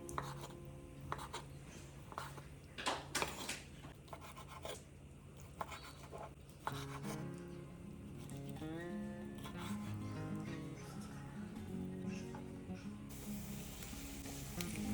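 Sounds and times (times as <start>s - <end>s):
food preparation scraping and tapping: 0.0s - 4.9s
soft background music: 6.7s - 14.9s.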